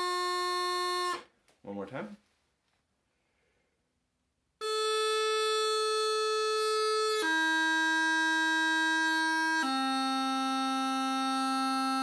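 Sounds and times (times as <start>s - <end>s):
bagpipe chanter notes: 0.0s - 1.3s, 4.6s - 12.0s.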